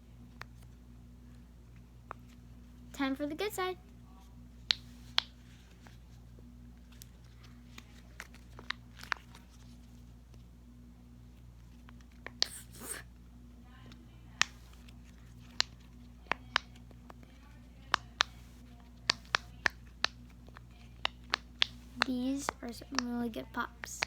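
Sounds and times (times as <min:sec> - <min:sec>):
rustle of handling: 0:03.8 - 0:10.5.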